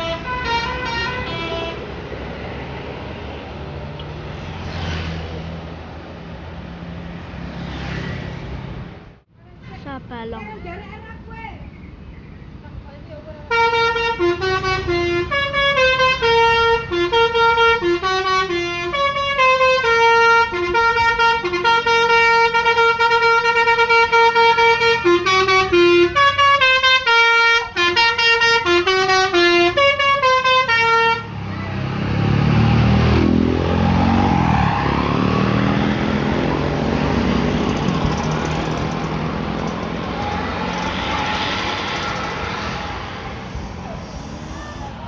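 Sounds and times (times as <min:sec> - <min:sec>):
musical bus horn melody: 0:00.0 - 0:02.0, 0:13.5 - 0:31.4
bus engine rumble: 0:00.0 - 0:45.0
road noise: 0:00.0 - 0:45.0.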